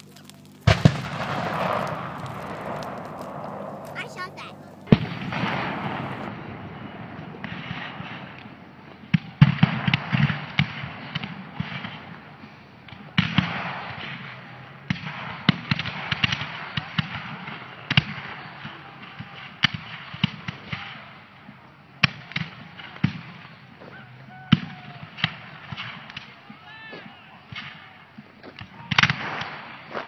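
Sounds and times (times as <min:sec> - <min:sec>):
steady outdoor hiss: 0:00.0 - 0:06.3
distant musket fire: 0:00.0 - 0:26.4, 0:27.0 - 0:30.0.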